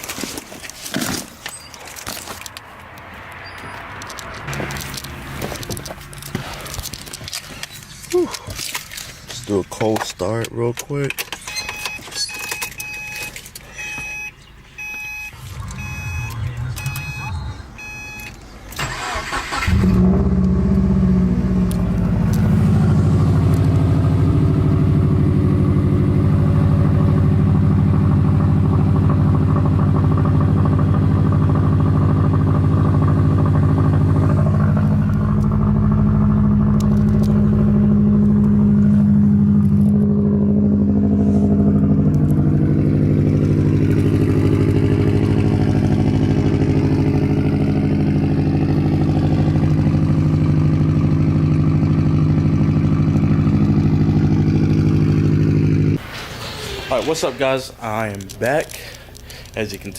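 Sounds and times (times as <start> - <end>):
car engine idling: 12.8 - 59.9
engine starter cranking: 14.8 - 21.0.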